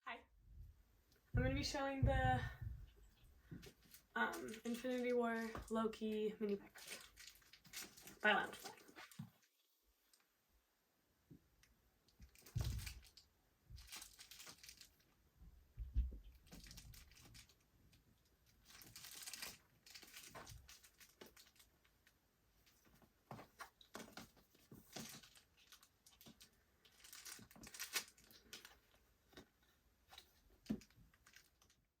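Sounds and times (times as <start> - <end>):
dull knocks: 1.4 - 2.9
packaging crinkling and rustling: 3.1 - 9.5, 12.2 - 15.2, 16.3 - 32.0.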